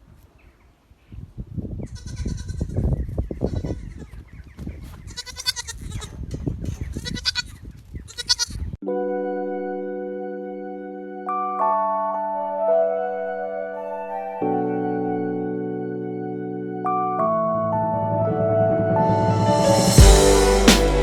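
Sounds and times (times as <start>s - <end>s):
held keyboard chord: 8.8s - 21.0s
low rumbling noise: 17.9s - 21.0s.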